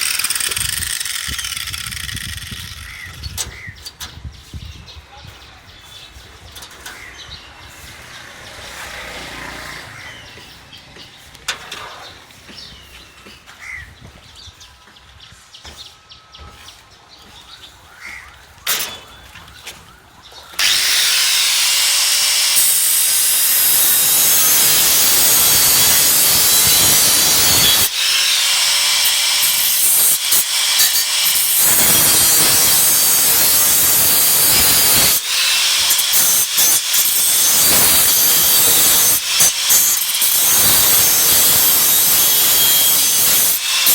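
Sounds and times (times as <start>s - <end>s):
power tool grinding metal: 0.0s - 3.2s, 20.6s - 43.9s.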